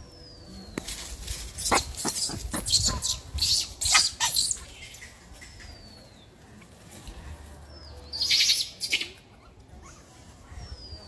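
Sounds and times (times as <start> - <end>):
monkey shrill cries: 1.7 - 4.6.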